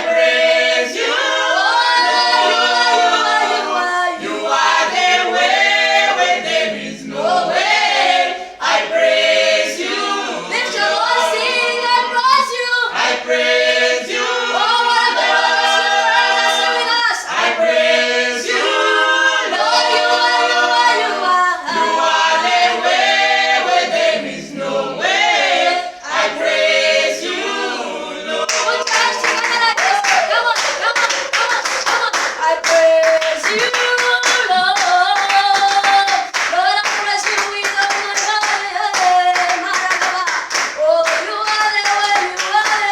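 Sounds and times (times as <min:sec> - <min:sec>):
rhythmic hand clapping: 0:00.0 - 0:24.3, 0:28.4 - 0:42.9
group singing in harmony: 0:00.0 - 0:42.9.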